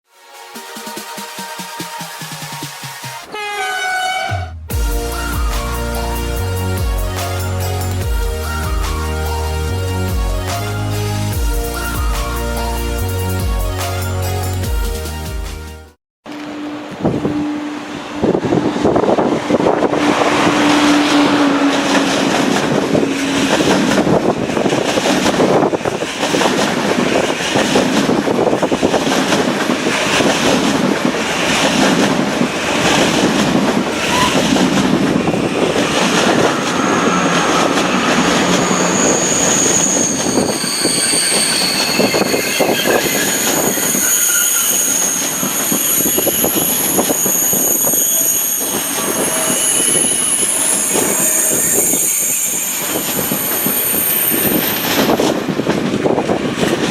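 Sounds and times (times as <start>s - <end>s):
wheels squealing on rails: 16.4s - 56.9s
train wheels clacking on rails: 18.9s - 56.9s.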